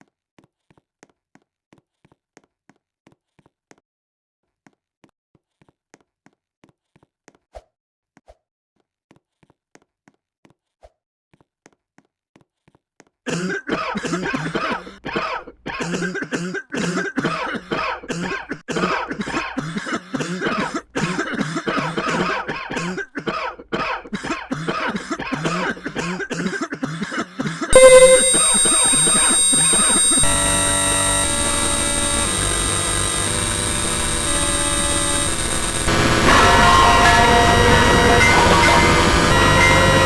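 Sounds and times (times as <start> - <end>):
person coughing: 13.3 - 27.8.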